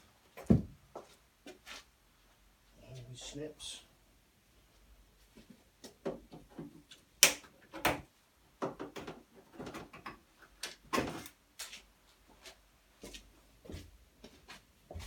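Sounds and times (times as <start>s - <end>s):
plastic panels knocking and clicking: 5.9s - 11.3s.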